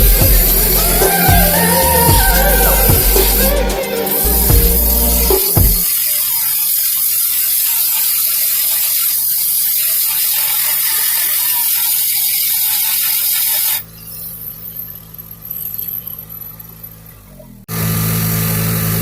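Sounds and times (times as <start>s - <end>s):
welding arc crackling and hissing: 0.0s - 13.8s.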